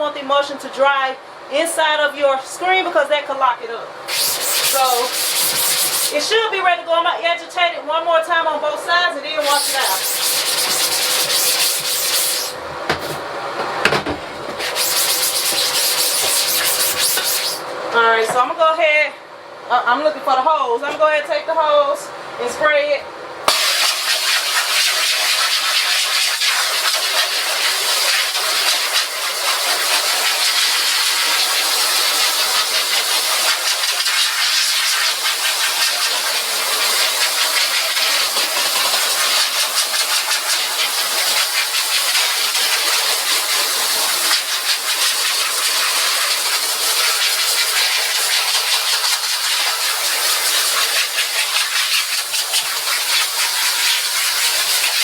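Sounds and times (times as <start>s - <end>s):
water spray hissing: 4.1s - 6.2s, 9.4s - 12.6s, 14.6s - 17.6s, 23.5s - 55.0s.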